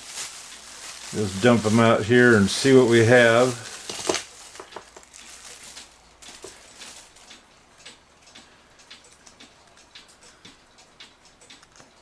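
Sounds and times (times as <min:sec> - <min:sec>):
bag rustling: 0:00.0 - 0:07.3
small parts clicking and tapping: 0:02.5 - 0:12.0.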